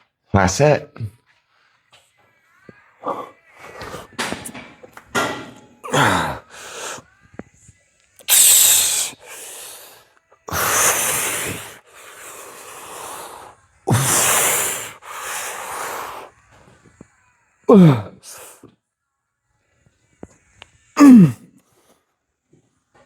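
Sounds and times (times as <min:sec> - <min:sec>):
man breathing hard: 0:05.8 - 0:07.2, 0:08.3 - 0:16.4
man grunting: 0:05.9 - 0:06.5, 0:13.9 - 0:14.4, 0:17.7 - 0:18.4, 0:21.0 - 0:21.4
voiced gasp: 0:12.9 - 0:16.3, 0:21.0 - 0:21.5.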